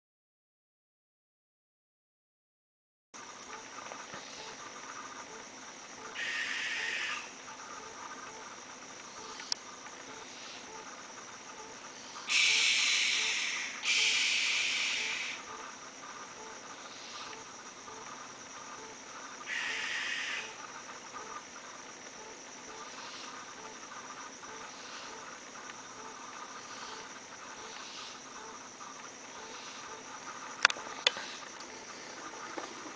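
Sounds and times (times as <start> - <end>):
crickets chirping: 3.2 - 32.9
young owls screeching: 6.1 - 7.4, 12.2 - 15.5, 19.4 - 20.6.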